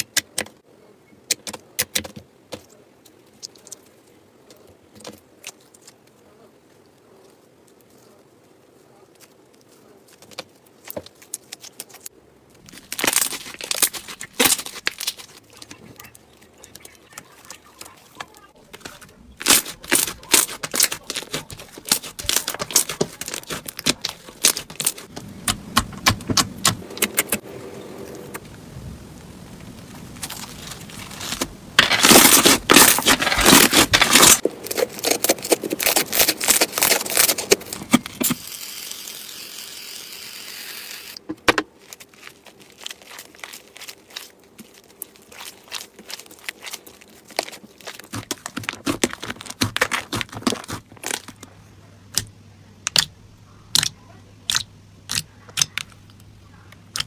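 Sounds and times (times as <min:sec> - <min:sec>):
slime crackling and popping: 0:09.1 - 0:27.4, 0:29.6 - 0:38.6, 0:41.1 - 0:51.5, 0:52.1 - 0:53.1, 0:53.7 - 0:57.0.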